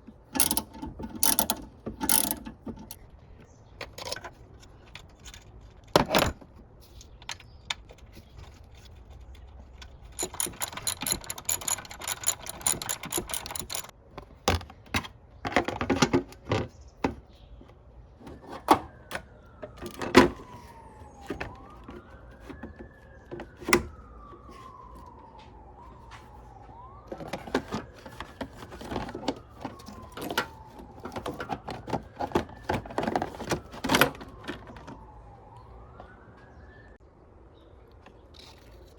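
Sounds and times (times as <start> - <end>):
metal tools clanking: 0.3 - 3.0, 8.6 - 13.9
ratchet wrench clicking: 0.4 - 2.4, 10.2 - 13.9
emergency siren wailing: 18.1 - 37.5.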